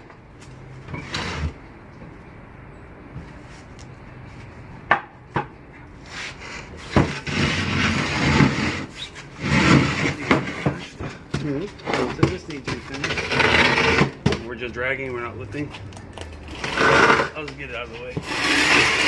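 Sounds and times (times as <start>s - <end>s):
furniture scraping across floor: 0.9s - 1.6s, 6.1s - 11.2s, 11.8s - 14.2s, 16.5s - 19.0s.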